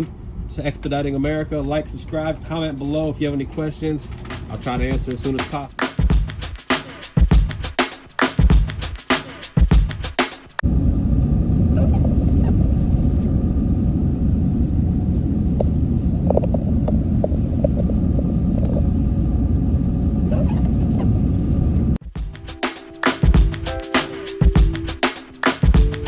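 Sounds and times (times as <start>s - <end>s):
vehicle road and engine rumble: 10.6s - 22.0s.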